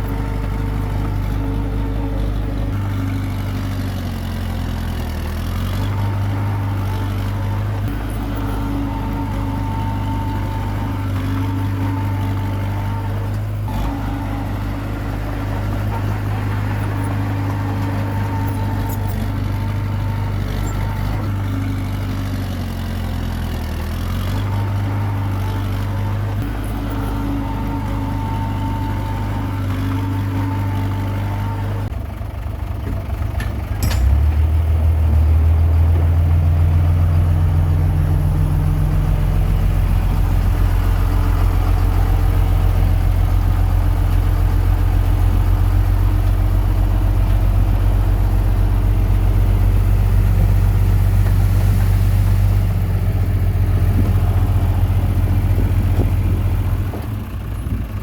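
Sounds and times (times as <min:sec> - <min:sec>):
bulldozer diesel engine running: 0:00.0 - 0:58.0.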